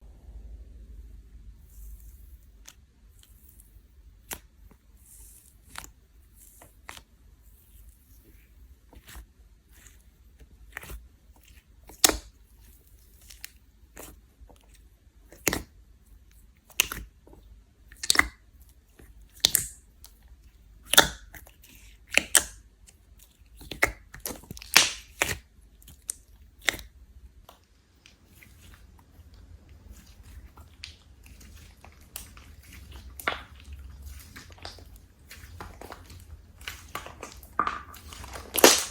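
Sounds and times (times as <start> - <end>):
slime popping and clicking: 35.6 - 38.9.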